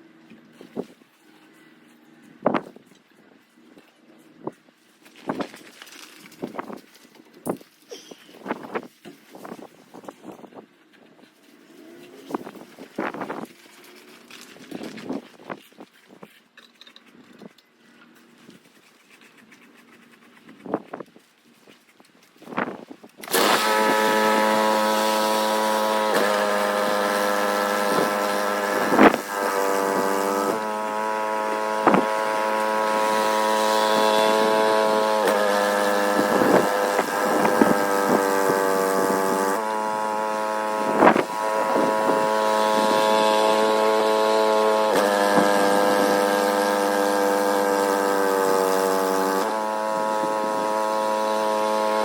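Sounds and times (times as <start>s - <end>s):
snowblower engine running: 23.2s - 52.0s.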